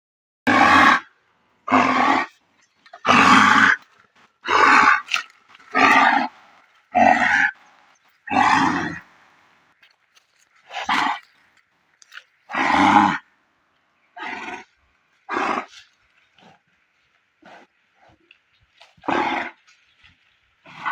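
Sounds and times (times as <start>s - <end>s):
bull groaning: 0.5s - 9.4s, 10.6s - 11.4s, 12.1s - 13.3s, 14.2s - 16.8s, 17.4s - 19.8s, 20.6s - 20.9s.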